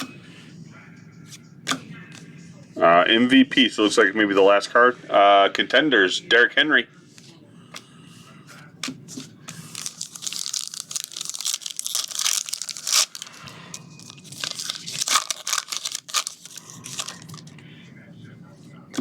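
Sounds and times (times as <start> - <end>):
foil wrapper tearing and crinkling: 9.6 - 17.4.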